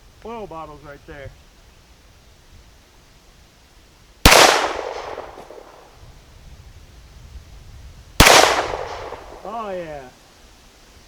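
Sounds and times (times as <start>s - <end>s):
pistol shots with echo: 4.3s - 5.9s, 8.2s - 9.8s.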